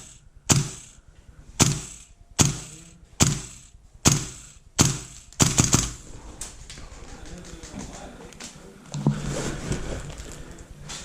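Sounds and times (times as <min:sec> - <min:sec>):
airsoft rifle shots: 0:00.0 - 0:01.0, 0:01.6 - 0:06.0.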